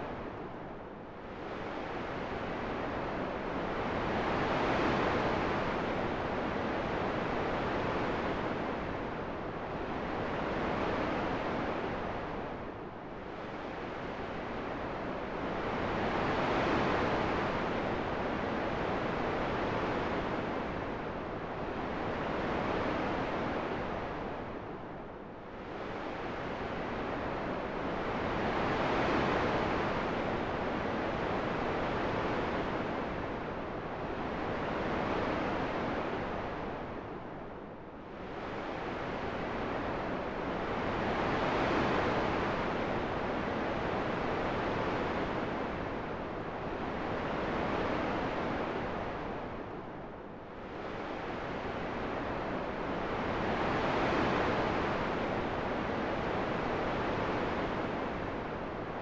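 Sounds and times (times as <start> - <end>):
wind blowing in gusts: 25.6 - 59.0.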